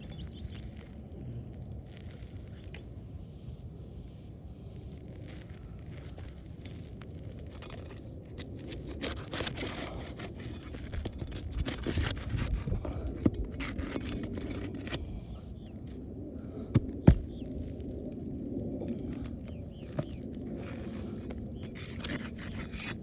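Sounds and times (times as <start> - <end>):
pry bar scraping shingles: 7.3 - 17.9, 18.8 - 23.0.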